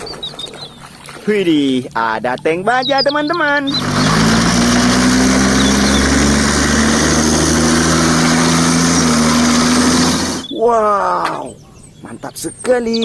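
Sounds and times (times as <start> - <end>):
pressure washer motor hum: 2.8 - 10.5
water jet hissing: 3.5 - 10.5.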